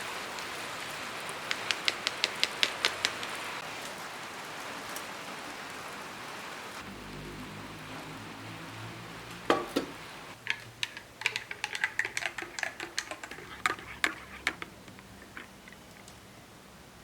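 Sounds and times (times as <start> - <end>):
small hard objects clicking: 1.5 - 3.4, 10.4 - 16.2.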